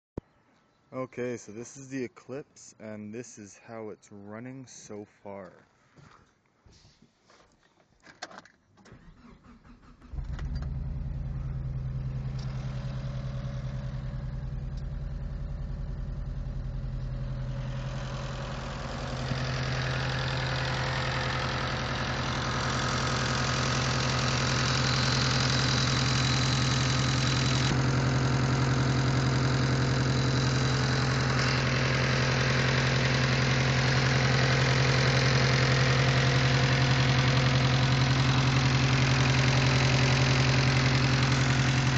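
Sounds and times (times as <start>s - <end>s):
car engine running: 8.9s - 41.9s.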